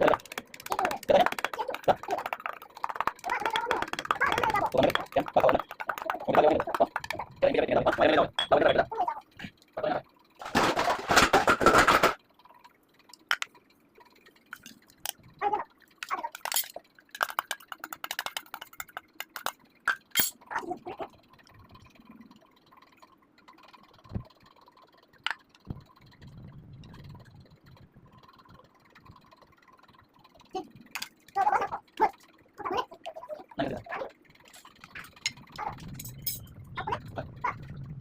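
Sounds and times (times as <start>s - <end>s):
liquid being poured: 0.0s - 10.6s, 11.6s - 31.4s
utensils clinking on glass and metal: 1.0s - 7.1s, 7.9s - 8.9s, 16.3s - 20.4s, 34.5s - 36.5s.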